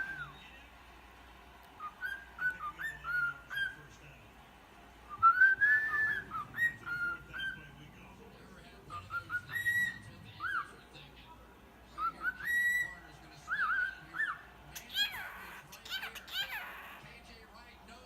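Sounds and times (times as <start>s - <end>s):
cockatiel whistling song: 0.0s - 0.5s, 1.8s - 4.0s, 5.1s - 7.8s, 8.9s - 10.7s, 12.0s - 17.0s.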